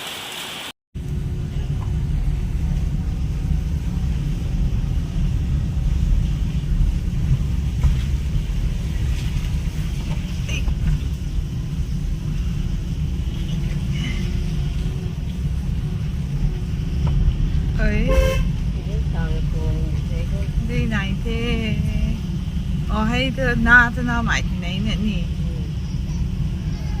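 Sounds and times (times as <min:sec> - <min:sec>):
vehicle rumbling on road: 0:01.0 - 0:27.0.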